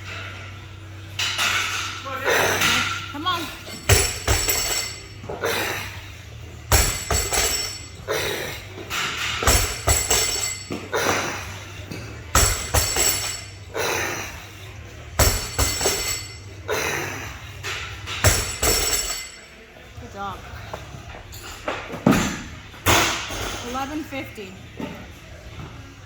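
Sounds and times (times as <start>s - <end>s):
workout equipment thudding: 9.4s - 10.6s.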